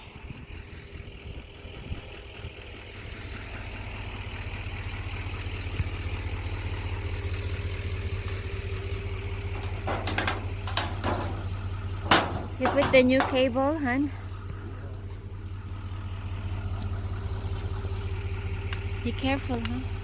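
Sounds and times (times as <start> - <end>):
engine idling: 0.0 - 20.0
short knocks or clatters: 9.6 - 13.5.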